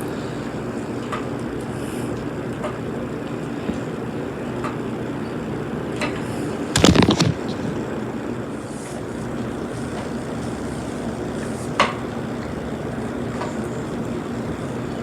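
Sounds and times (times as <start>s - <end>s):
ceiling fan humming: 0.0s - 15.0s
loud clicks and knocks: 6.8s - 7.6s.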